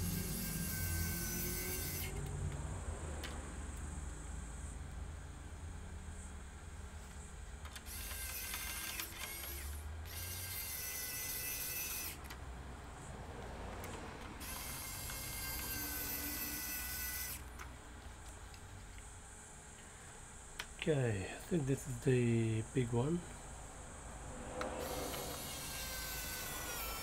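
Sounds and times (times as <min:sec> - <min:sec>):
small electric motor whining: 0:00.0 - 0:02.6, 0:07.7 - 0:13.2, 0:13.8 - 0:18.4, 0:24.4 - 0:27.0.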